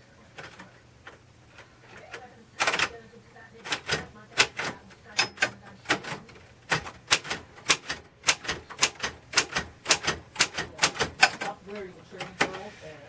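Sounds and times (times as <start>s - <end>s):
typewriter key strikes: 2.6s - 3.0s, 3.6s - 11.5s.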